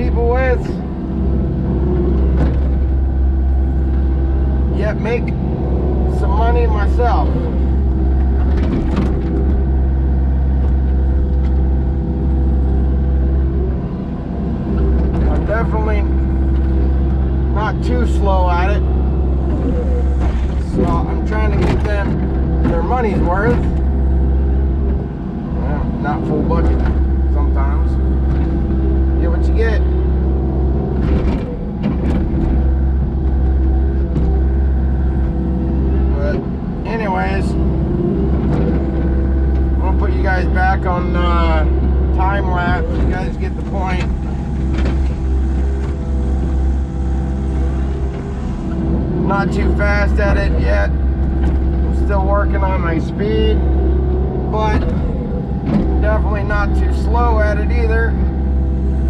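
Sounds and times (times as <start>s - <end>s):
excavator diesel engine running: 0.0s - 59.0s
knocks and clanks: 2.0s - 4.1s, 6.4s - 12.0s, 18.9s - 25.2s, 25.8s - 29.2s, 29.8s - 36.7s, 37.4s - 52.8s, 53.6s - 58.5s.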